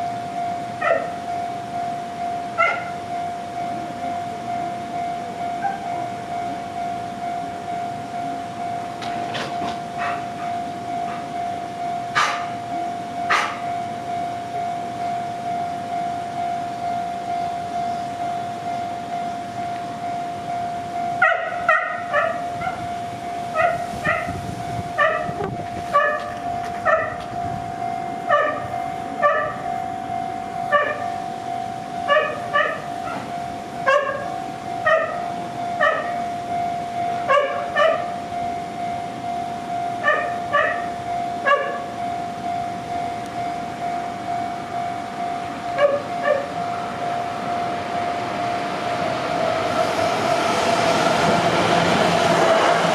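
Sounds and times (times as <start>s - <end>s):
level-crossing warning bell ringing: 0.0s - 52.9s
dog barking: 0.8s - 1.1s, 2.6s - 2.9s, 10.0s - 10.2s, 12.2s - 12.5s, 13.3s - 13.6s, 21.2s - 22.8s, 23.6s - 24.3s, 25.0s - 25.3s, 26.0s - 26.3s, 26.9s - 27.2s, 28.3s - 28.6s, 29.2s - 29.6s, 30.7s - 31.0s, 32.1s - 33.2s, 33.9s - 34.3s, 34.9s - 35.2s, 35.8s - 36.1s, 37.3s - 38.1s, 40.0s - 40.8s, 41.4s - 41.8s, 45.8s - 46.5s.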